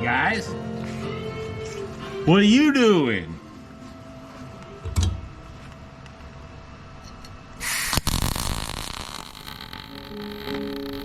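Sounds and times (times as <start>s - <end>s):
loud hiss: 7.6s - 11.0s.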